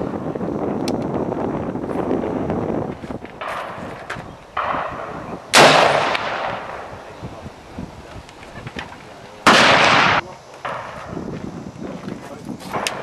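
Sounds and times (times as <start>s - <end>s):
abrupt loud burst: 3.4s - 11.2s
rifle shot: 4.6s - 6.9s, 9.4s - 11.0s.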